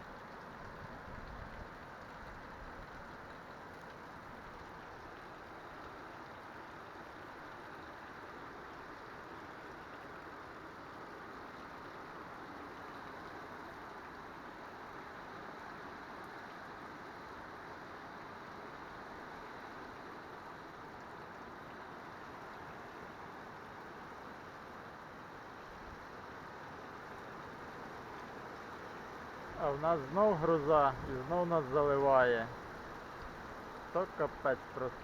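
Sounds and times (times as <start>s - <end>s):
heavy rain pouring: 29.4s - 35.0s.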